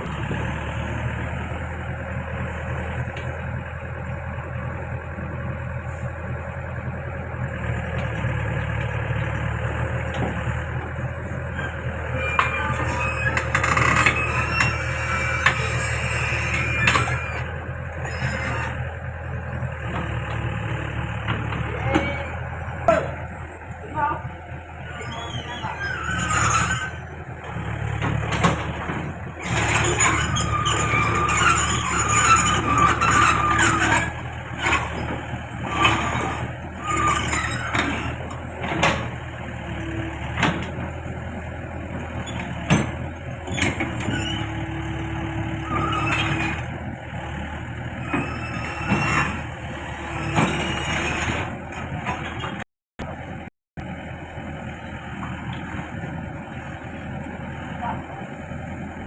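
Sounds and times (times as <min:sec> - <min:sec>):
backhoe engine running: 0:00.0 - 0:59.0
high metallic squeals: 0:11.4 - 0:18.8, 0:24.8 - 0:27.2, 0:29.4 - 0:38.2, 0:42.3 - 0:46.7, 0:48.0 - 0:51.5.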